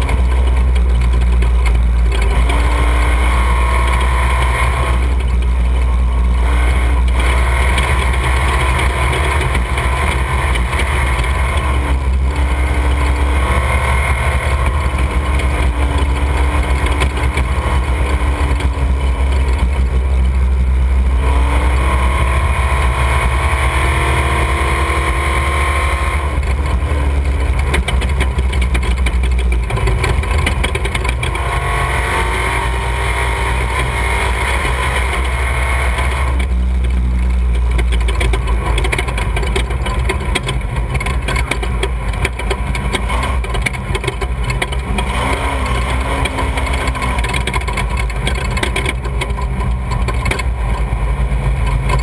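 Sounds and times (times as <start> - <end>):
vehicle engine running hard: 0.0 - 52.0.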